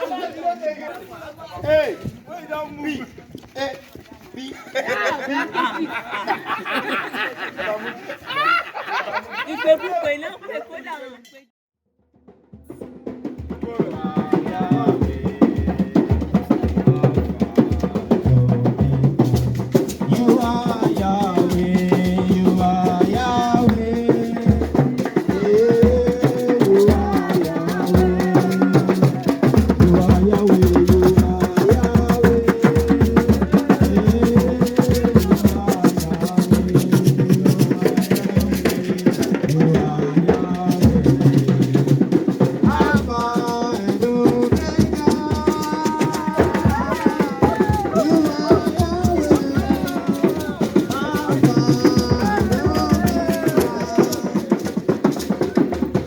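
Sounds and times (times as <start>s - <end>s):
drum beat: 12.1s - 56.0s
people singing: 13.3s - 56.0s
rattling shakers: 43.0s - 55.7s.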